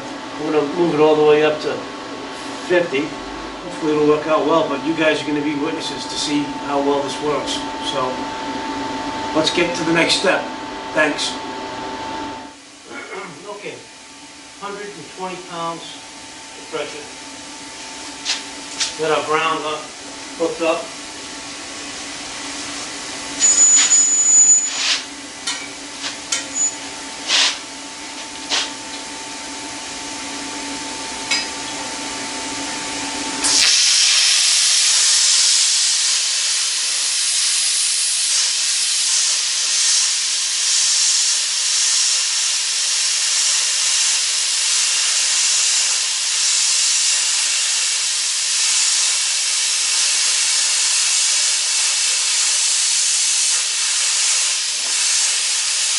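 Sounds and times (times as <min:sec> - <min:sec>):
steady hum: 0:00.0 - 0:39.5
plasma cutter arc hissing: 0:23.4 - 0:27.7, 0:33.4 - 0:55.9.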